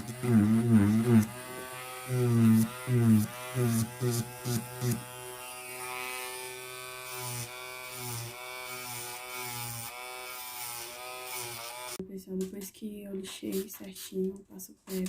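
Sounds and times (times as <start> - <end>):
electric nail drill whining: 0.0 - 12.0.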